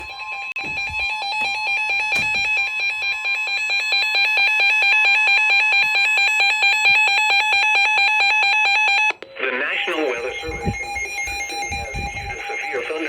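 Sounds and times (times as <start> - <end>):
electronic two-pitch warble alert: 9.8 - 13.0.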